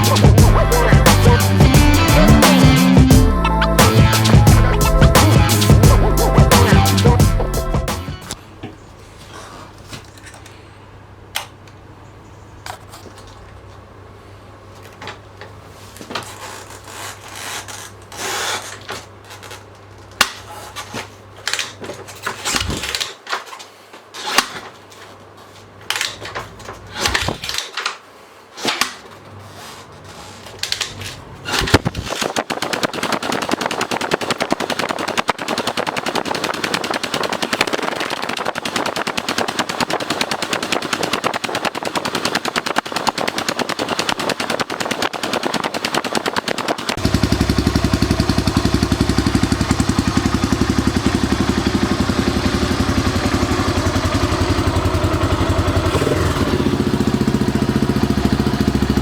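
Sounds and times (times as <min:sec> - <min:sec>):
single-cylinder engine running: 0:46.9 - 0:59.0.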